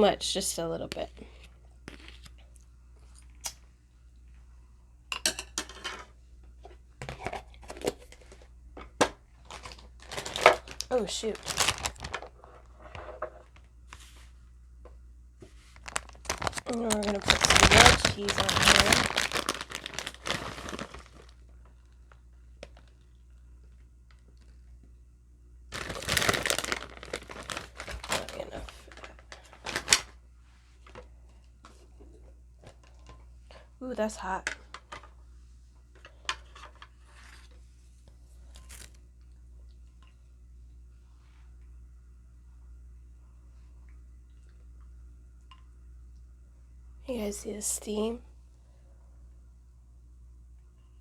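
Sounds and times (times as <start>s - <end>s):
crinkling and clattering of utensils: 5.1s - 13.7s, 15.6s - 23.1s, 25.7s - 30.2s, 36.0s - 37.6s.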